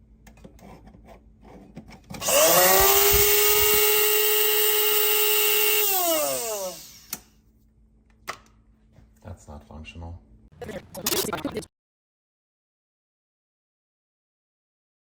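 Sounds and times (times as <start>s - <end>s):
coffee grinder motor whine: 2.2s - 7.1s.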